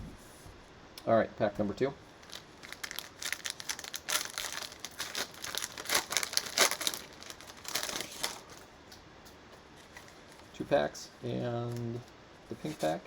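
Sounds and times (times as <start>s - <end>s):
plastic wrapper tearing and crinkling: 2.2s - 8.6s.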